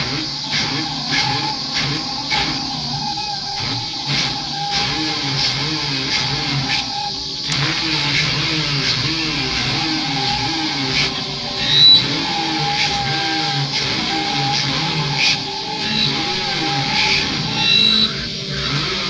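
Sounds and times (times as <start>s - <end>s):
steady high drone and hiss: 0.0s - 19.0s.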